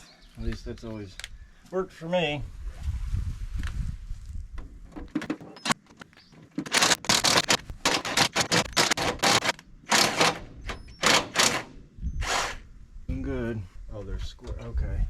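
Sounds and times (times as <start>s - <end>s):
harsh scraping strokes: 11.3s - 12.6s.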